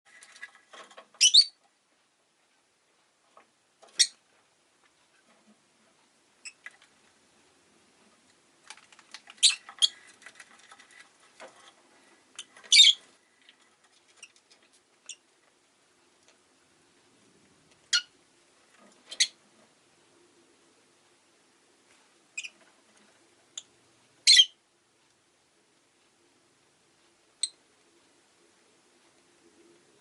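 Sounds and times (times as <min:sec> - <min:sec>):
faint ticks and rustling: 0:00.1 - 0:30.0
lovebird chirping: 0:01.2 - 0:01.6, 0:03.9 - 0:04.2, 0:06.4 - 0:06.7, 0:09.4 - 0:10.0, 0:12.4 - 0:13.1, 0:15.0 - 0:15.2, 0:17.9 - 0:18.1, 0:19.1 - 0:19.4, 0:22.4 - 0:22.6, 0:23.5 - 0:24.6, 0:27.4 - 0:27.6.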